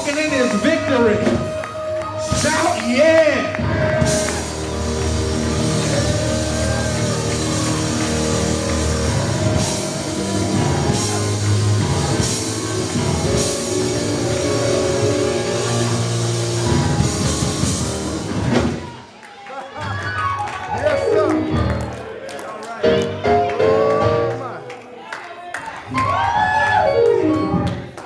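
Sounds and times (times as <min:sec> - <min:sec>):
upbeat church band music: 0:00.0 - 0:28.0
cymbal crashes: 0:04.0 - 0:18.8.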